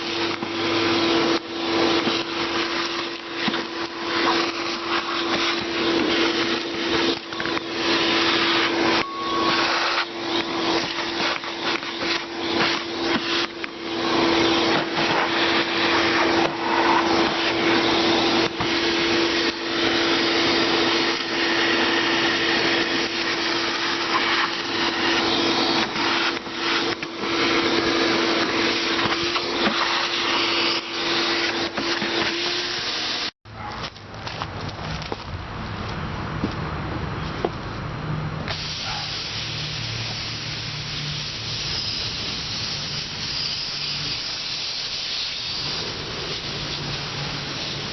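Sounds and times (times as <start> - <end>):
shop vac motor whine: 0.0 - 33.4.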